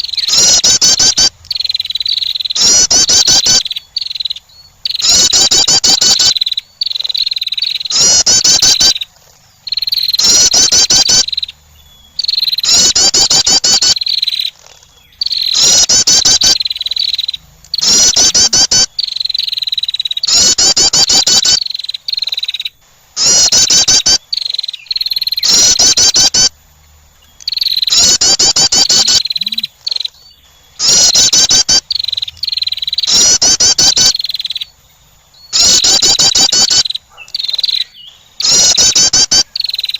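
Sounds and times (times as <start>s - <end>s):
high insect chirring: 0.0s - 39.9s
wren call high trills: 0.0s - 39.9s.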